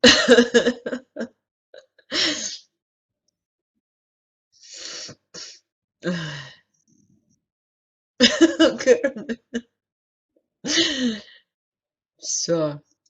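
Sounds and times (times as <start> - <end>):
person sneezing: 2.2 - 2.6
breathy sounds: 4.6 - 6.8.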